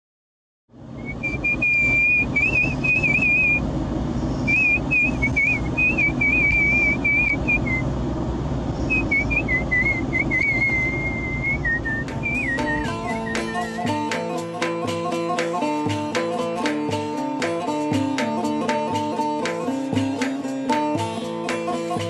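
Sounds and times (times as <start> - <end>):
steady low rumble: 0.7 - 22.0
person whistling a trilling tune: 1.0 - 3.6, 4.4 - 7.9, 8.9 - 14.2.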